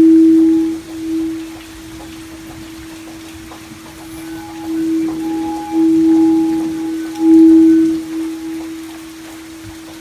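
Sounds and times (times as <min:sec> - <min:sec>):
singing bowl ringing: 0:00.0 - 0:01.7, 0:04.0 - 0:09.8
faint rain-like patter: 0:00.0 - 0:10.0.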